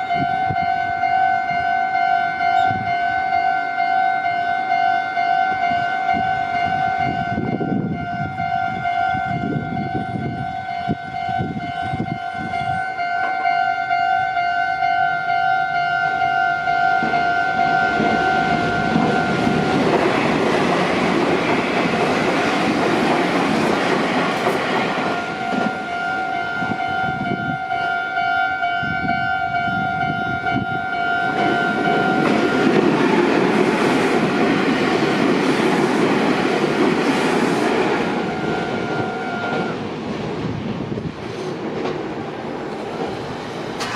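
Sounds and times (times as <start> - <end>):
level crossing bell ringing: 0.0 - 19.9, 25.2 - 32.8
trains rumbling and clattering: 0.0 - 43.9.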